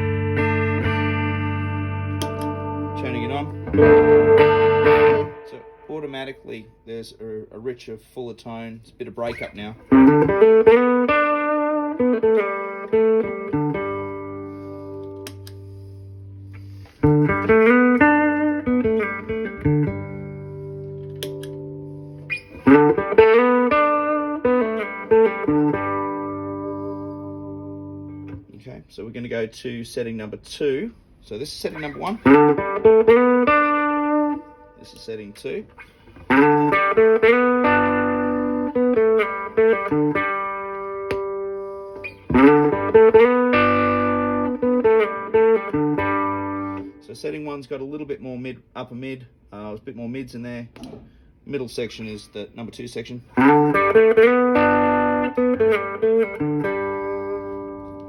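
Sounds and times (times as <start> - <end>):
electric guitar notes and chords: 0.0 - 6.2, 9.4 - 28.5, 31.8 - 35.1, 35.7 - 47.1, 53.3 - 58.0.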